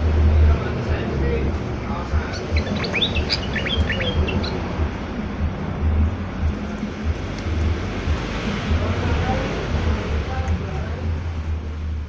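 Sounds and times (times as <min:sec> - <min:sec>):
steady low rumble: 0:00.0 - 0:12.0
bird singing bubbling notes: 0:02.0 - 0:04.8.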